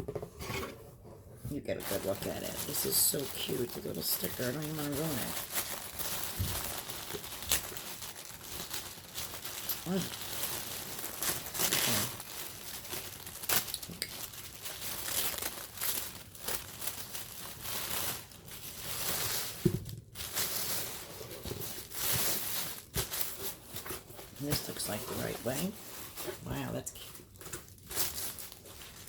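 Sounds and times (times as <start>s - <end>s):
paper packaging crinkling: 1.7s - 29.0s
paper tearing: 11.1s - 12.3s.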